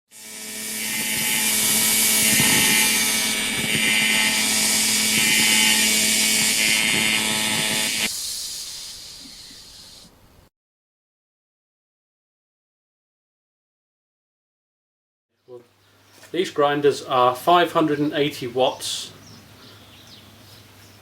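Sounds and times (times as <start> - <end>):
angle grinder whining: 0.1 - 10.2.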